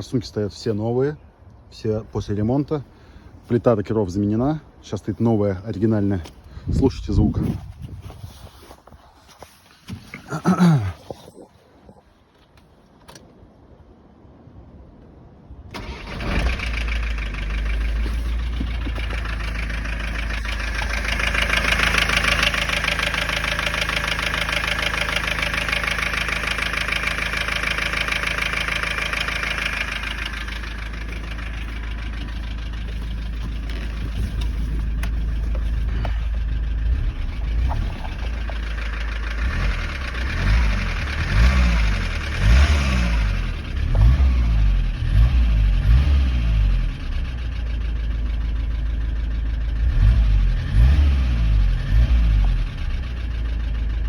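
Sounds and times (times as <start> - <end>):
diesel engine starting and idling: 15.7 - 54.0
engine knock: 16.4 - 44.2.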